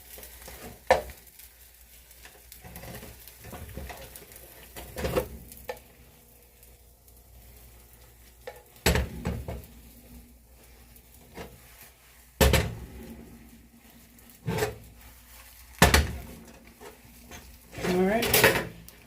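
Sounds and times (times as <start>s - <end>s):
utensil clacking on frying pan: 0.1s - 1.4s, 8.4s - 9.7s, 12.4s - 13.2s, 15.7s - 19.0s.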